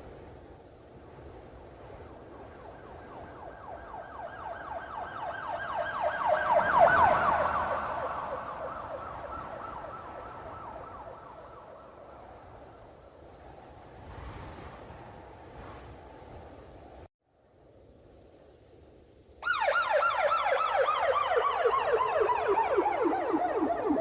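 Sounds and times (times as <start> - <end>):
police siren yelping: 3.4 - 12.0, 19.4 - 24.0.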